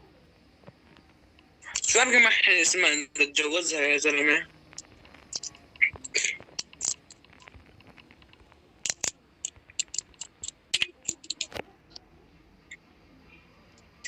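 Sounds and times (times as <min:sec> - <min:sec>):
typing on a keyboard: 0:04.8 - 0:11.6.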